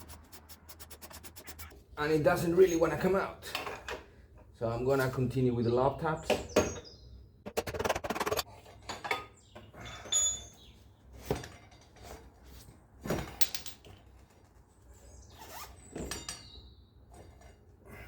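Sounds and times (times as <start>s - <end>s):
metallic knocks and clinks: 13.4s - 14.0s.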